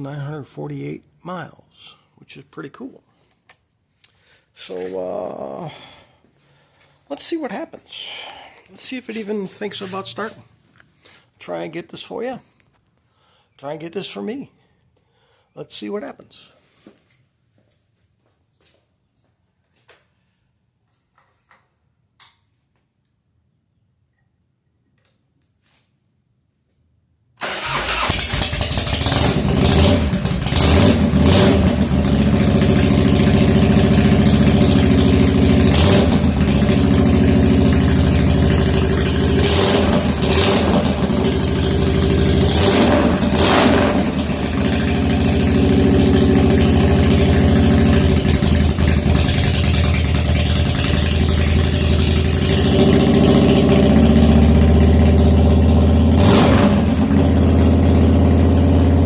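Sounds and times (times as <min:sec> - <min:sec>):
motorcycle engine starting: 0:27.4 - 0:59.0.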